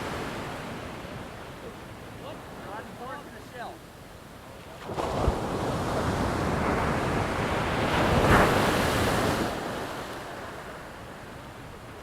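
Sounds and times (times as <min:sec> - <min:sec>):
ocean wave breaking on shore: 0:04.6 - 0:12.0.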